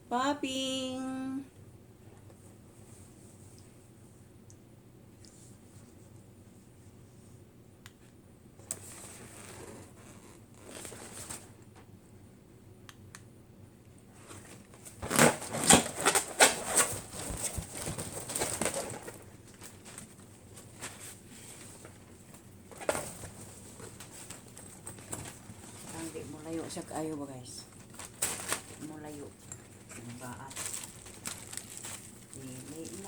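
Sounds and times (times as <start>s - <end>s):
rubbery balloon rustling: 8.7s - 11.6s, 14.1s - 26.8s, 27.8s - 33.0s.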